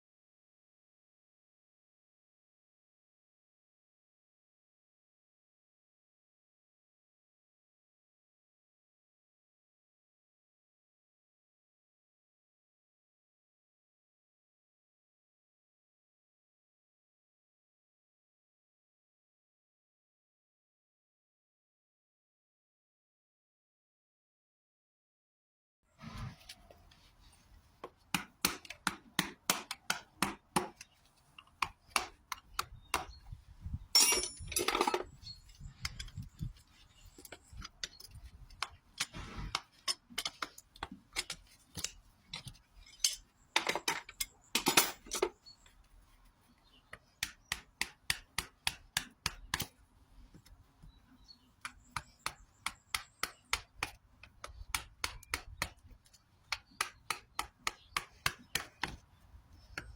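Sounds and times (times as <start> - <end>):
tools clicking on hoof: 27.8 - 59.9.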